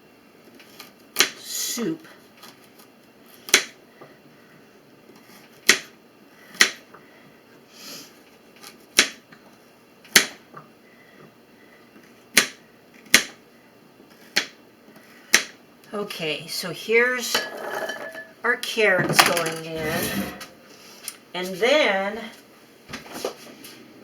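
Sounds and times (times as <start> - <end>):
knife chopping on cutting board: 5.6 - 5.9, 6.6 - 6.8, 14.3 - 14.6, 15.3 - 15.5.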